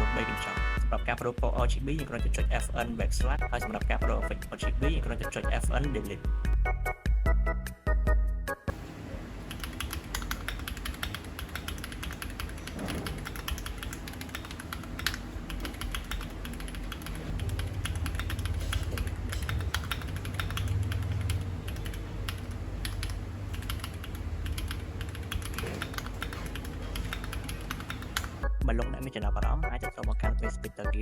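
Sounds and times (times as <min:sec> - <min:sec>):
mechanical keyboard typing: 0:09.5 - 0:28.4.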